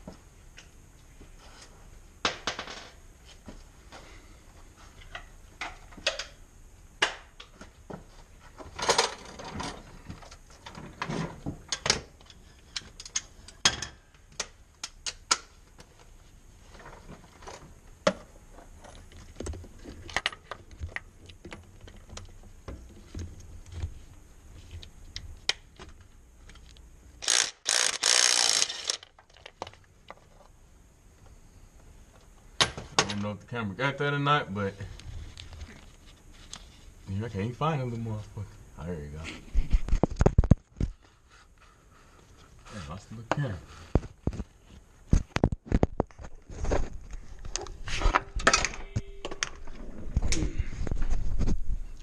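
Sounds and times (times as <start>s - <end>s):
ratchet clicks: 27.2s - 29.1s.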